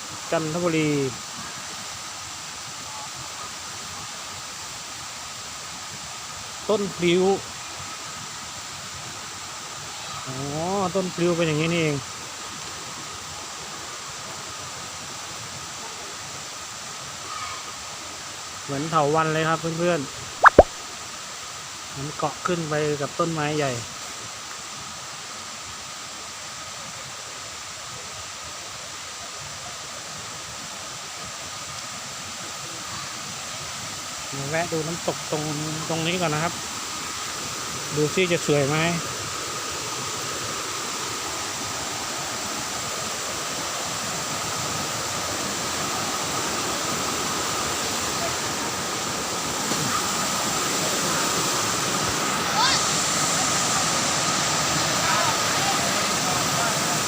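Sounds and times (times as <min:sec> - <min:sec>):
waterfall rushing: 0:00.0 - 0:02.1, 0:17.2 - 0:21.0, 0:32.0 - 0:57.0
thin high tone: 0:20.4 - 0:20.7.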